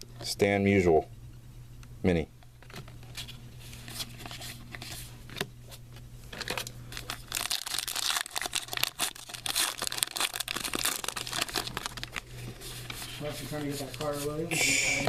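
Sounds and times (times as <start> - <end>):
wrapper crinkling and tearing: 6.3 - 14.2.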